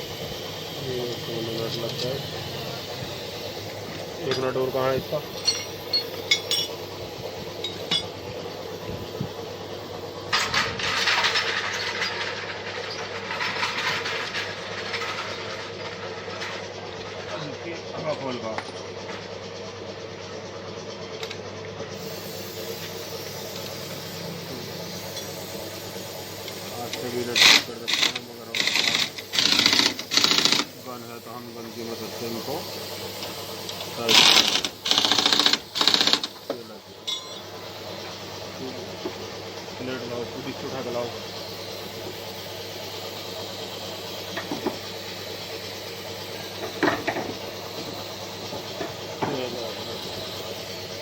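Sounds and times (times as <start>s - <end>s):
motor running: 0.0s - 51.0s
workshop machinery hum: 0.0s - 51.0s
high hiss: 22.0s - 36.3s.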